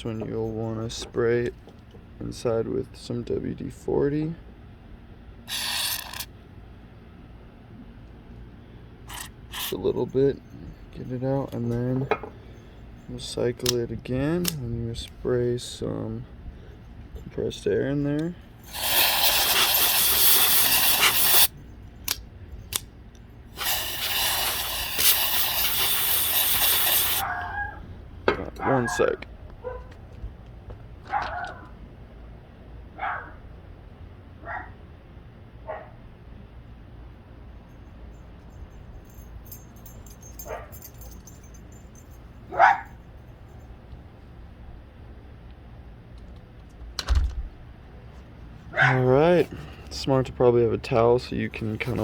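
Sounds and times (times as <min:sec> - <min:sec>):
compressed air spraying: 0:05.5 - 0:06.2, 0:18.7 - 0:21.5, 0:23.5 - 0:27.2
dog barking: 0:27.2 - 0:27.8, 0:29.6 - 0:29.9, 0:31.1 - 0:31.7, 0:33.0 - 0:33.4, 0:34.4 - 0:34.8, 0:35.6 - 0:36.0, 0:40.4 - 0:40.9, 0:42.5 - 0:43.0, 0:48.7 - 0:49.1.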